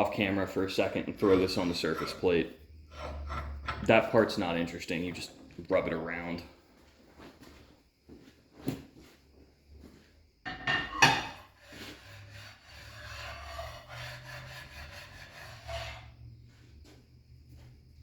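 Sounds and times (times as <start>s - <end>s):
metal scraping rub: 1.0s - 4.3s, 10.9s - 16.4s
metal knocks on surface plate: 10.5s - 11.4s.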